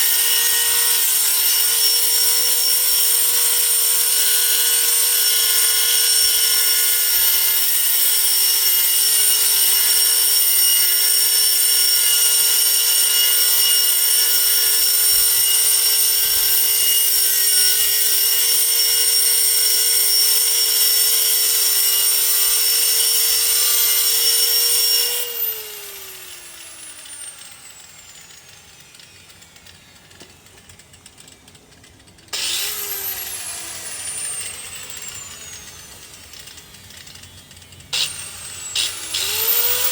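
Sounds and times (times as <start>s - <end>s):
angle grinder whining: 0.0s - 39.9s.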